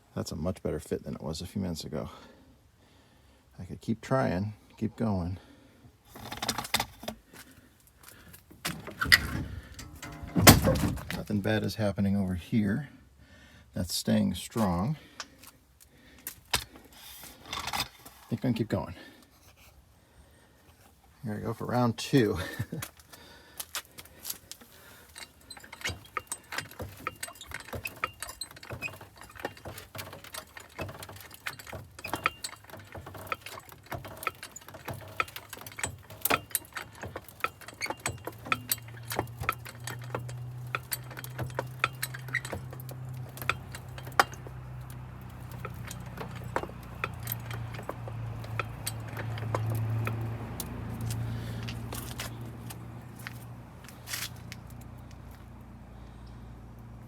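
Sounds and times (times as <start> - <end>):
hydraulic ram metallic clicks: 6.2 - 7.2, 8.4 - 11.3, 24.3 - 55.2.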